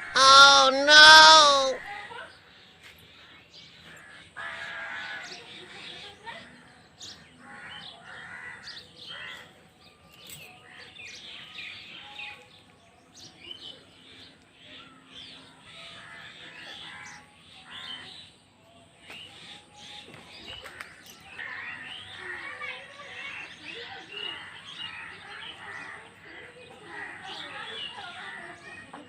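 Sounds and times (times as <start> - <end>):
birds chirping: 0.0 - 1.9.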